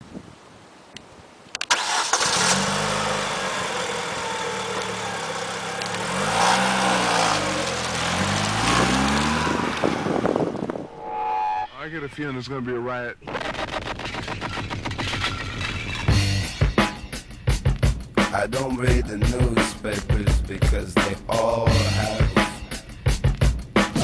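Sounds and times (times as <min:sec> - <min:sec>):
car engine starting and idling: 0:01.6 - 0:10.8
engine revving: 0:01.8 - 0:11.7.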